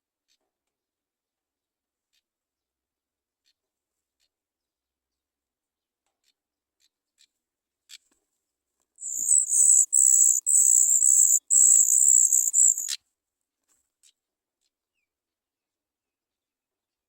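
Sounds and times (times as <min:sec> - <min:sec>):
nestlings begging calls: 0:09.0 - 0:13.0.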